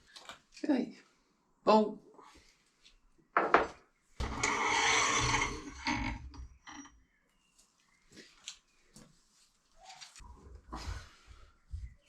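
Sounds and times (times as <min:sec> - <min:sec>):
metal tools scraping and clattering: 0:04.2 - 0:06.9.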